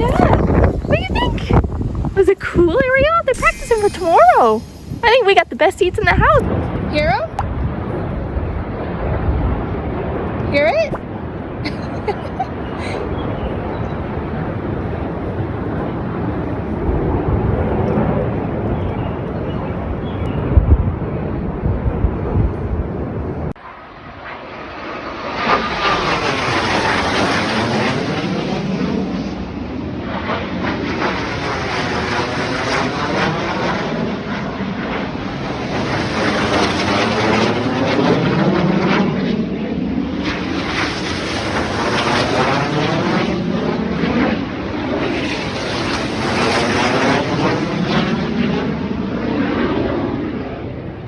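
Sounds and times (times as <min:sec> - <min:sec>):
jet whine falling in pitch: 0:00.0 - 0:07.4
jets passing overhead: 0:00.0 - 0:18.2, 0:23.6 - 0:50.8.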